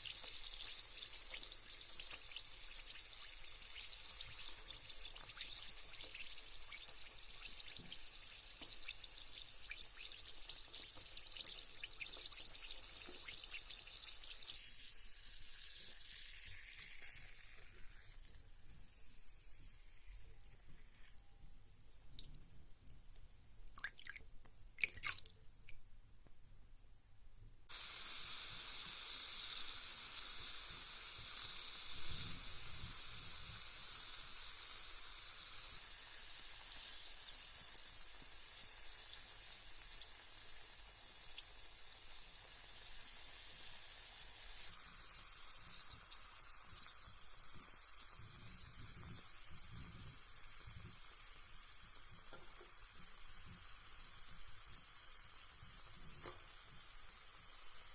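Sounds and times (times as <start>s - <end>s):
water dripping and splashing: 0.0s - 14.6s, 22.1s - 23.0s, 23.6s - 25.8s
bath bomb fizzing: 0.0s - 21.3s, 23.7s - 25.4s.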